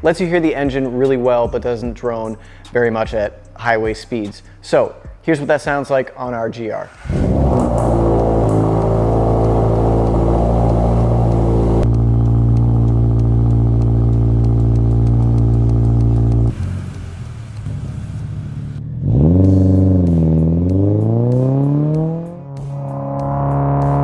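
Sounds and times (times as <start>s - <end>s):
car engine revving: 6.8s - 24.0s.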